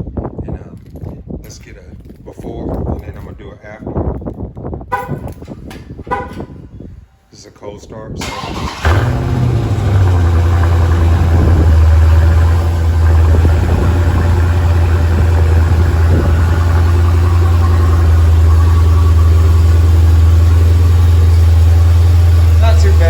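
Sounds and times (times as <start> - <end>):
car engine idling: 8.2 - 23.0.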